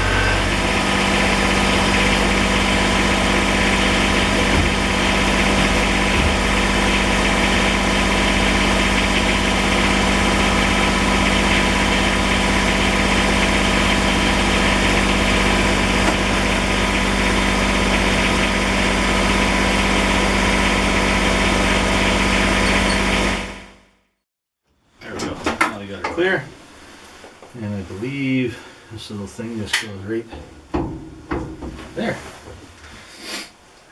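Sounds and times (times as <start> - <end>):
tractor diesel engine running: 0.0 - 23.7, 30.3 - 32.9.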